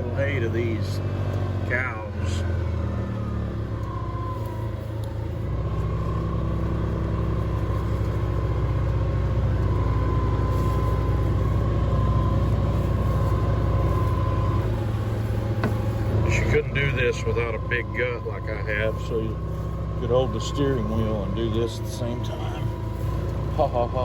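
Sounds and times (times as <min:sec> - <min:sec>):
vehicle engine running: 0:00.0 - 0:24.0
steady high whine: 0:09.5 - 0:24.0.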